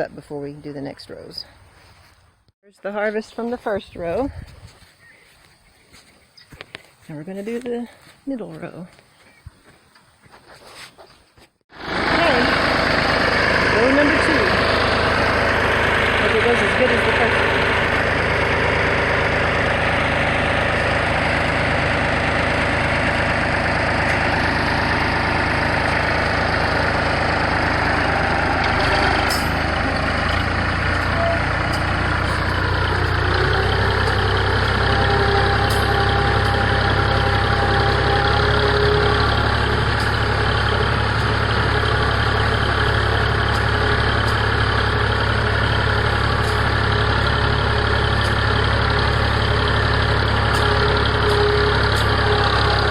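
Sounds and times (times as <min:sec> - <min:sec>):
tractor engine under load: 0:11.7 - 0:52.9.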